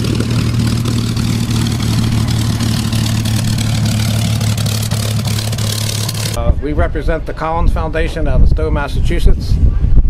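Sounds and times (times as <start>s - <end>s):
propeller aircraft engines running: 0.0s - 6.4s.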